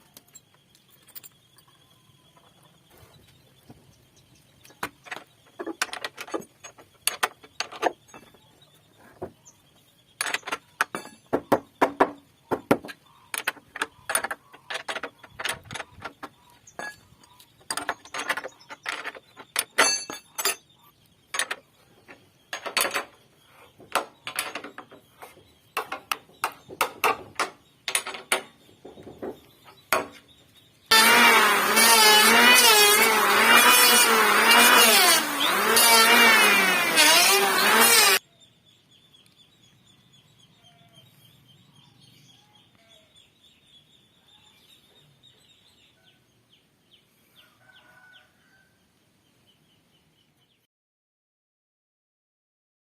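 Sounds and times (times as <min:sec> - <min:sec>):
knocks and taps on wood: 0:10.2 - 0:15.1.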